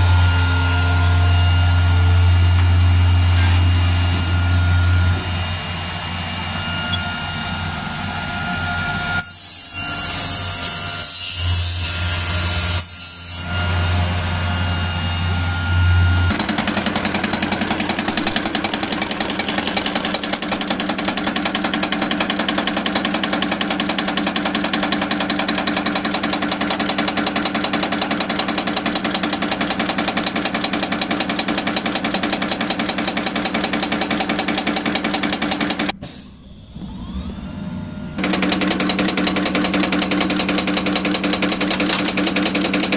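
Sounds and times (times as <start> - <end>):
low machine hum: 0.0 - 9.2, 13.4 - 22.6, 35.9 - 42.9
fast rattle of milling machine: 16.3 - 36.0, 38.2 - 42.9.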